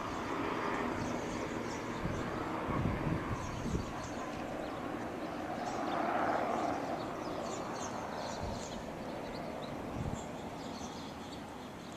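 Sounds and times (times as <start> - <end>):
broad rushing rumble: 0.0 - 7.5
small birds chirping: 0.0 - 11.9.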